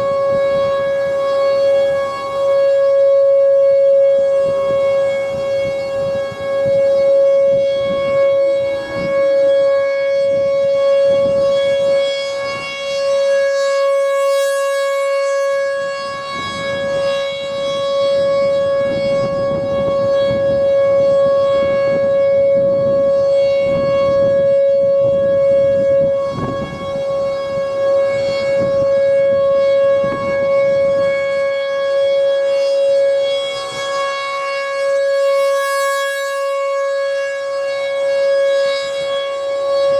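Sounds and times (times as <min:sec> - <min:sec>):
warning siren steady tone: 0:00.0 - 0:39.9.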